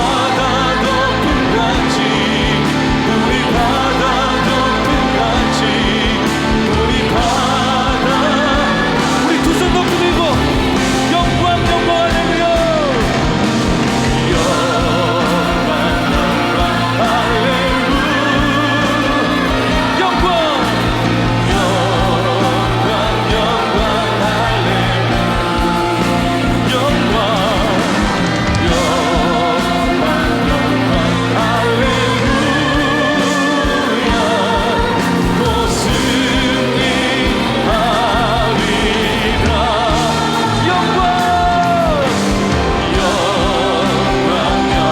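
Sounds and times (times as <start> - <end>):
band playing worship music: 0.0 - 44.9
singers with vibrato: 0.0 - 44.9.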